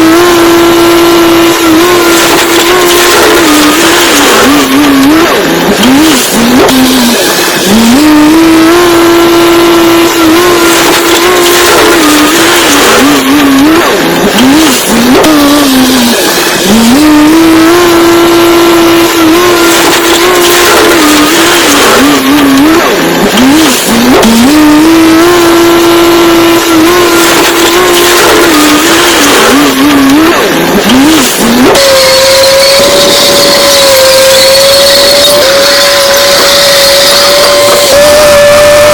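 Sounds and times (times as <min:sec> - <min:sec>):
vehicle engine revving: 0:00.0 - 0:38.9.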